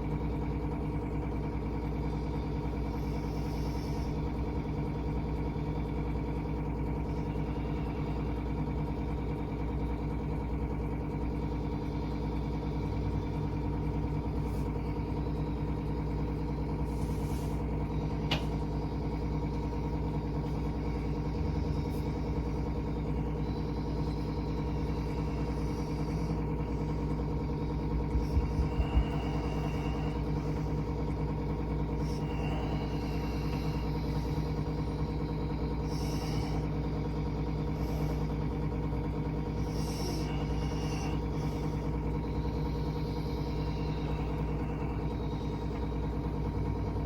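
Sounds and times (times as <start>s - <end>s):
steady low hum: 0.0s - 47.0s.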